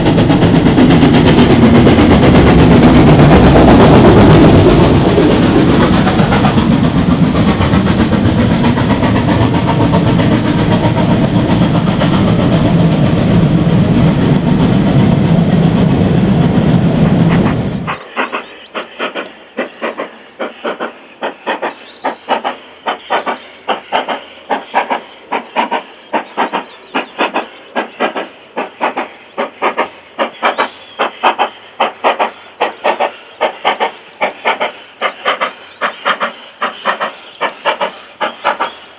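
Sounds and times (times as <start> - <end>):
steam hissing: 0.0 - 38.9
steam locomotive exhaust beats: 0.0 - 38.9.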